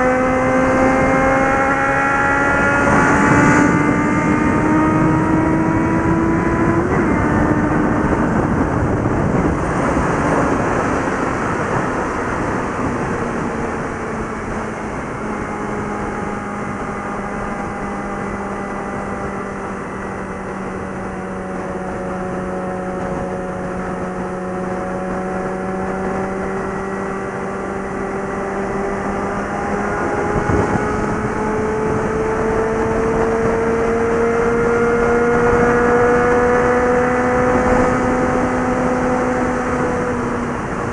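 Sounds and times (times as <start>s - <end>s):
motorcycle engine at speed: 0.0s - 40.9s
wind and road noise: 0.0s - 40.9s.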